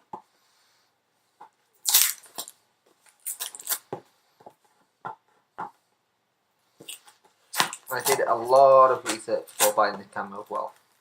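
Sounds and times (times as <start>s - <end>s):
packaging crinkling and rustling: 1.8s - 3.9s.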